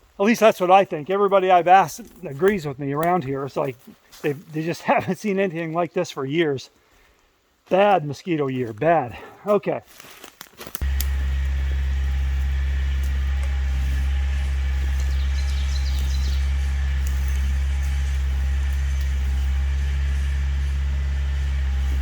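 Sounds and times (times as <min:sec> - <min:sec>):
tractor diesel engine running: 0:10.8 - 0:22.0.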